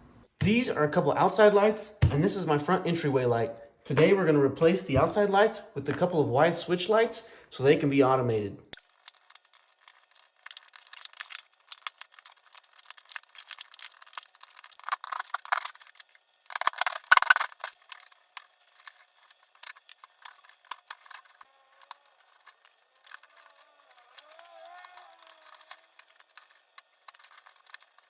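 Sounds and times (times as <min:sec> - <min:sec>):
clicks and rattles of hand tools: 0:08.8 - 0:28.0
scraping and rustling: 0:08.8 - 0:28.0.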